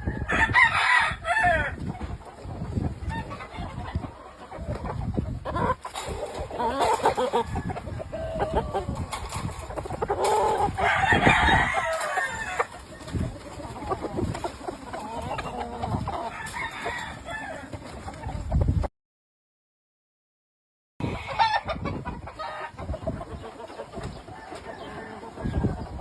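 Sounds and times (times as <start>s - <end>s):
roosters crowing: 0.0s - 2.0s, 5.6s - 17.8s, 24.0s - 26.0s
chickens clucking: 0.0s - 18.9s, 21.0s - 26.0s.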